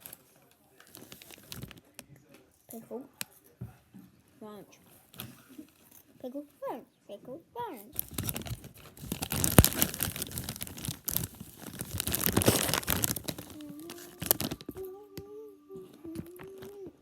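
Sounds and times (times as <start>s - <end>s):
crisp packet crinkling and tearing: 0.0s - 1.9s, 8.0s - 14.9s
crunching: 8.0s - 14.8s
faint pitched voice-like hum: 13.5s - 17.0s.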